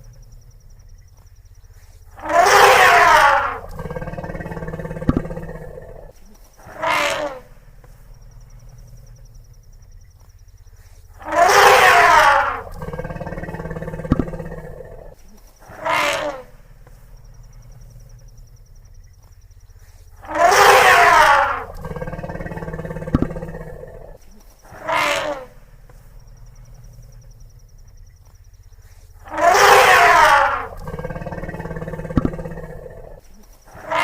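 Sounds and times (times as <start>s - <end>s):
elephant low rumbling growl: 2.0s - 9.9s, 11.1s - 19.2s, 20.0s - 34.0s
elephant trumpeting blasts: 2.1s - 7.6s, 11.2s - 16.6s, 20.2s - 25.6s, 29.2s - 33.2s.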